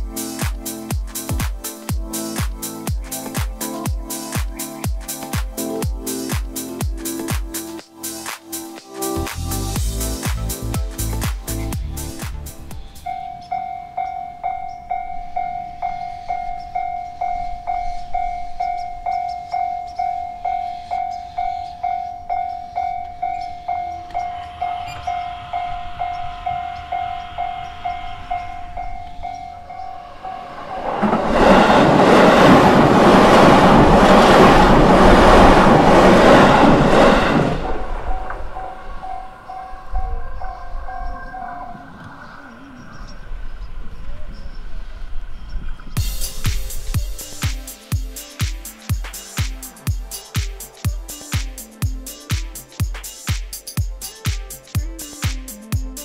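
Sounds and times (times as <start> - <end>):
train passing over crossing: 0.0 - 42.0, 45.2 - 54.9
level crossing warning bell: 13.1 - 30.7, 38.0 - 41.8.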